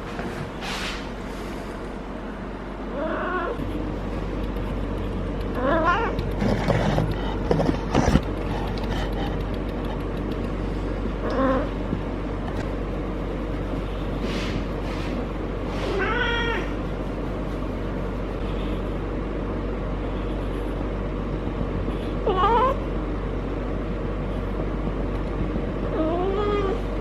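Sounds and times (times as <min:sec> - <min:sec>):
cat yowling: 0:05.6 - 0:06.2, 0:15.9 - 0:16.8, 0:22.2 - 0:22.8.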